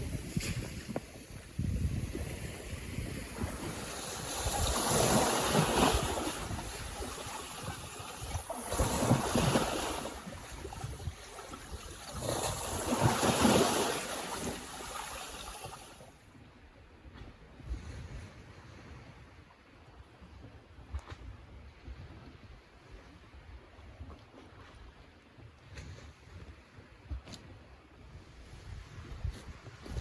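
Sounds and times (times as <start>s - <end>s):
wind noise on microphone: 0.0s - 16.0s, 17.0s - 30.0s
waves breaking on beach: 0.0s - 16.2s.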